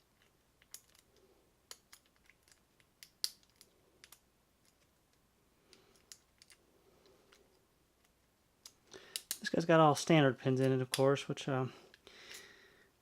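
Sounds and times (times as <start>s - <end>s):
lock pick metallic clicks: 0.2s - 4.9s, 8.6s - 9.6s.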